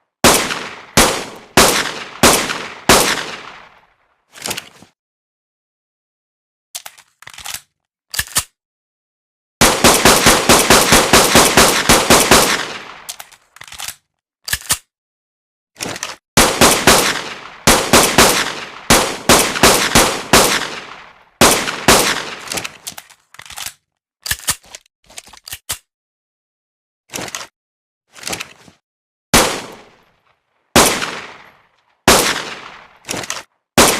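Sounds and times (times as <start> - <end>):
pistol shots: 0.2 - 3.8, 9.6 - 13.1, 16.4 - 22.8, 29.4 - 30.0, 30.8 - 31.5, 32.1 - 33.9.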